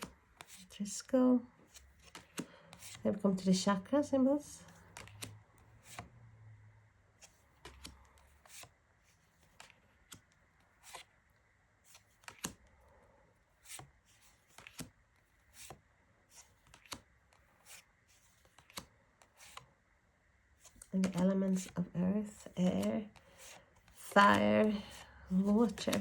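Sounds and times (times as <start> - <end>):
cards tapping and sliding: 0.0 - 0.6, 1.7 - 3.0, 4.7 - 6.1, 7.2 - 11.1, 11.9 - 12.6, 13.6 - 19.7, 20.6 - 21.8, 22.4 - 26.0.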